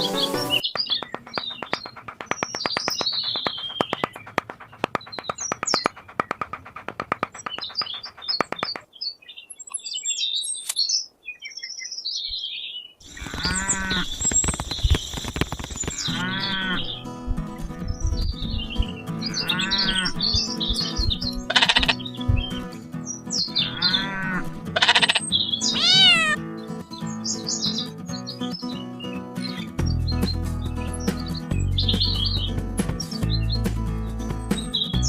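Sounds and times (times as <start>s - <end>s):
music: 0.0s - 0.6s, 16.1s - 35.0s
birds chirping: 0.0s - 35.0s
fast run of clicks: 0.6s - 8.9s, 13.0s - 22.8s
livestock calls: 13.1s - 14.3s, 15.9s - 17.1s, 19.2s - 22.5s, 23.6s - 26.4s.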